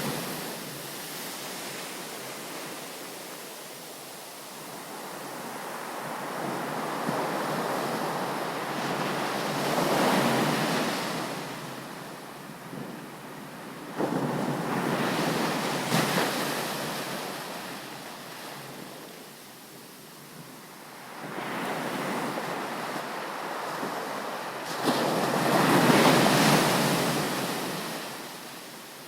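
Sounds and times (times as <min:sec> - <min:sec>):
ocean surf breaking on beach: 0:00.0 - 0:29.0
waves crashing: 0:21.2 - 0:29.0.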